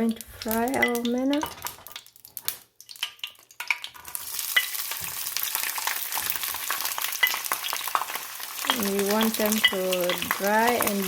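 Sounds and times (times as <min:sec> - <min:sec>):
fish sizzling in a pan: 0:00.0 - 0:11.0
stirring clicks: 0:07.2 - 0:11.0.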